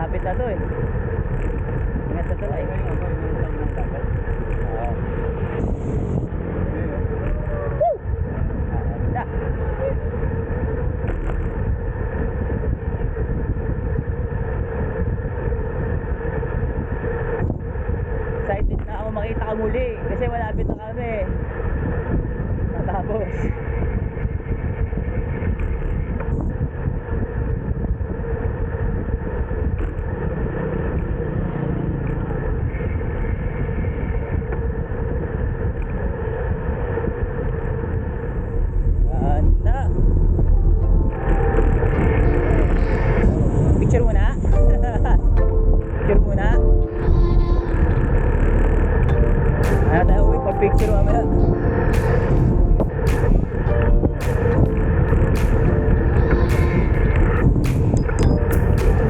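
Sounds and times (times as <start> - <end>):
wind rushing: 0.0 - 30.2, 31.8 - 59.0
bicycle road rumble: 0.0 - 59.0
constant hum: 0.0 - 59.0
faint steady hum: 31.6 - 59.0.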